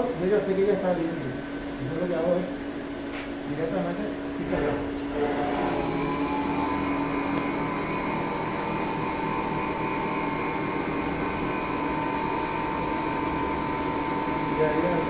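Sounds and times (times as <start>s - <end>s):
lathe motors whining: 3.6s - 15.0s.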